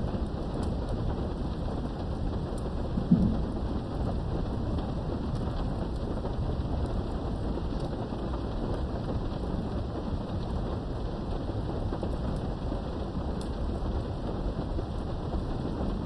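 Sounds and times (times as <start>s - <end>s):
heavy rain: 0.0s - 16.0s
low rumble of thunder: 0.0s - 16.0s.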